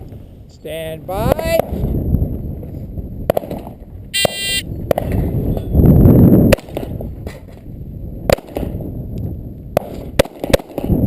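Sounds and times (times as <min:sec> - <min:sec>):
wind rushing on microphone: 0:00.0 - 0:11.0
shot timer start beep: 0:04.2 - 0:04.6.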